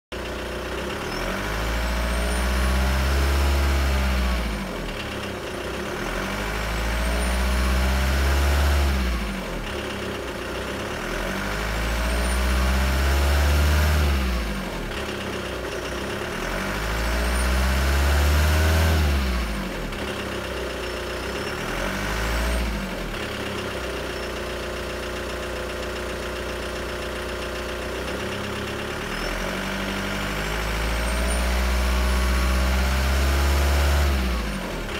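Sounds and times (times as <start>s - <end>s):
engine idling: 0.1s - 34.9s
engine revving: 0.7s - 24.4s, 28.0s - 34.9s.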